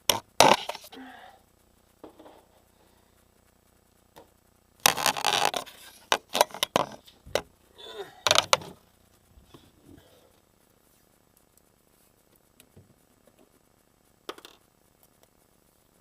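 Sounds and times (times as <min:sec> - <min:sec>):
rough scraping: 0:04.8 - 0:07.5.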